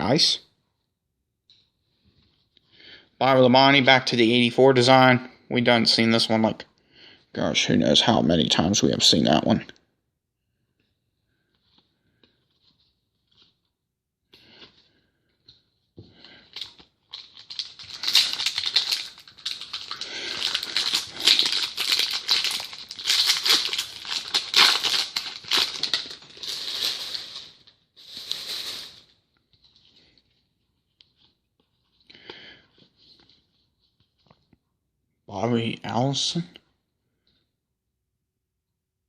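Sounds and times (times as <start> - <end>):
card pack wrapper crinkling and tearing: 16.4 - 29.2.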